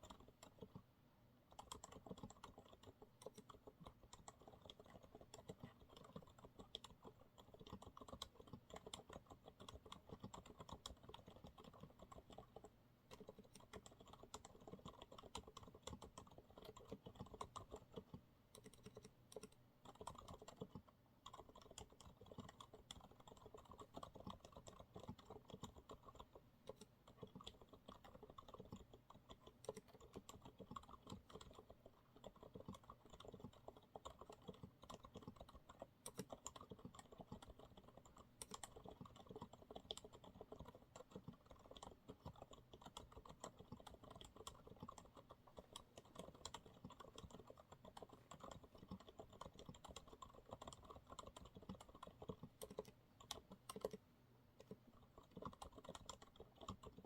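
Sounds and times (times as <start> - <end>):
fast typing on keyboard: 0.0 - 0.9, 1.5 - 57.0.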